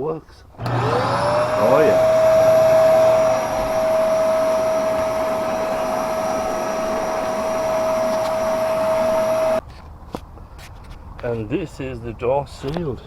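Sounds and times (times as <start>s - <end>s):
vacuum cleaner running: 0.6s - 9.6s.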